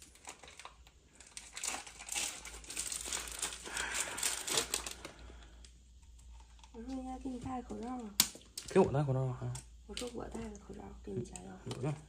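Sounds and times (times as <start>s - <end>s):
packaging crinkling: 0.0s - 7.0s.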